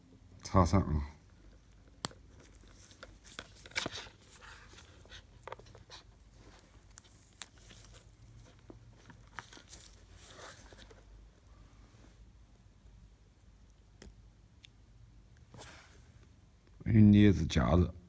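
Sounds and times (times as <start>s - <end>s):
light rustles of small parts: 1.3s - 12.2s.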